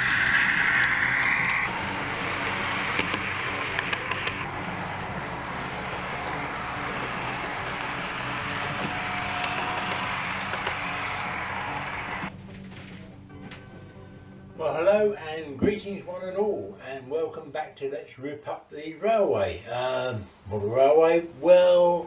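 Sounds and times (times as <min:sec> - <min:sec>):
model locomotive engine note: 0:00.0 - 0:12.3
wheels clicking on track: 0:00.0 - 0:13.8.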